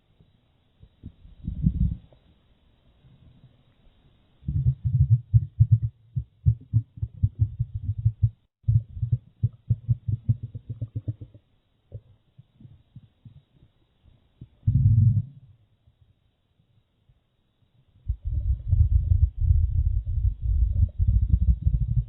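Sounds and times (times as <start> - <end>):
slowed stomach growling rumble: 1.0 - 2.2, 4.4 - 13.6, 14.4 - 15.6, 18.0 - 22.0.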